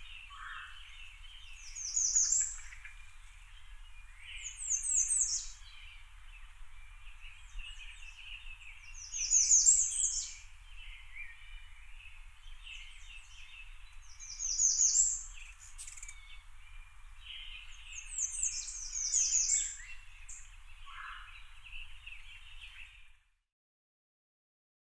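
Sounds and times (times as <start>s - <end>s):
quiet chirping of birds: 0.0s - 23.5s.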